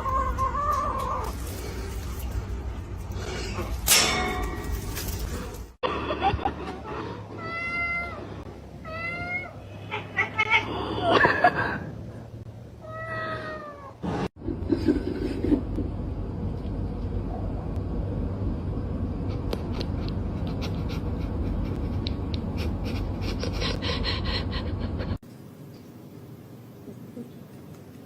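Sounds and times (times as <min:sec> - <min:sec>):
cat meowing: 0:07.4 - 0:10.9
steady rumbling noise: 0:14.0 - 0:25.2.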